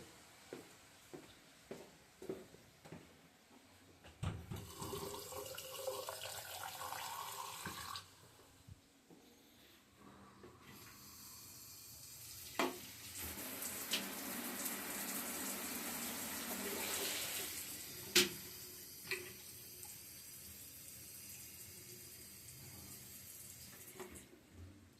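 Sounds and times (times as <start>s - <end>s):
tap water running into sink: 4.6s - 8.1s, 12.3s - 24.3s.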